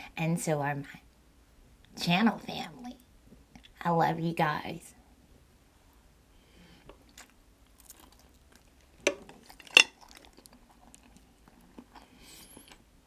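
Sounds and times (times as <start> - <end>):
food and utensil clicks: 9.0 - 10.5.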